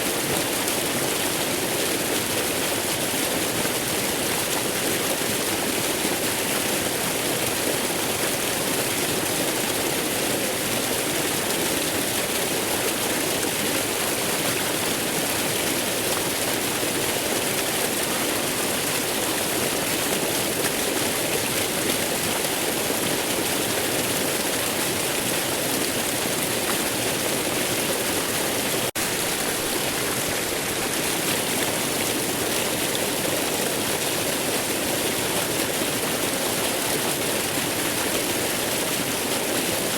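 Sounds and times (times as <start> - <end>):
waterfall rushing: 26.0 - 36.8.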